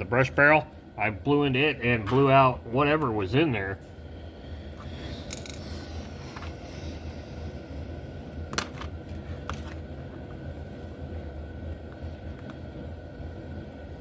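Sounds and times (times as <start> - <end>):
steady low hum: 0.0 - 14.0
small metal parts clicking: 5.3 - 5.6.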